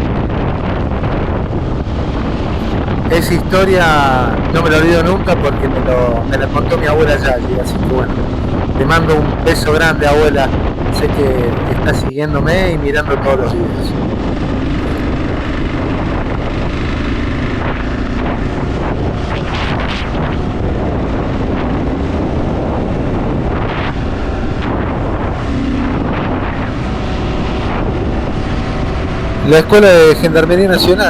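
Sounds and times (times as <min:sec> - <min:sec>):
motorcycle engine running: 0:00.0 - 0:03.2, 0:07.9 - 0:09.4, 0:13.9 - 0:31.0
wind rushing over microphone: 0:00.0 - 0:31.0.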